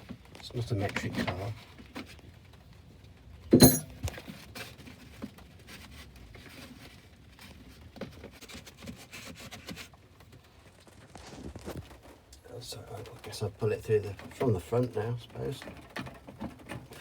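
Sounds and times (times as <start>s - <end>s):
sharp metallic clank: 3.6s - 4.1s.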